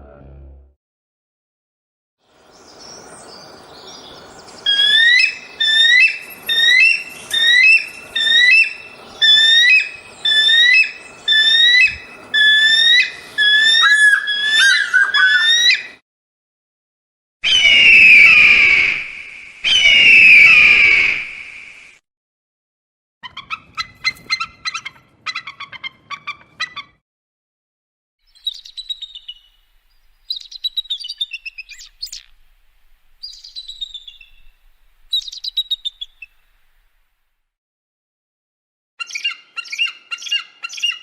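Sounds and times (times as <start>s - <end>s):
eagle harsh scream: 17.4s - 21.4s.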